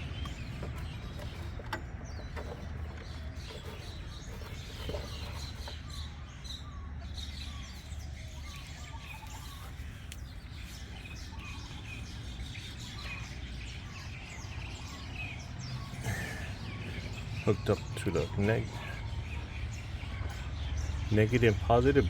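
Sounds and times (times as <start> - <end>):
small birds chirping: 0.0 - 22.0.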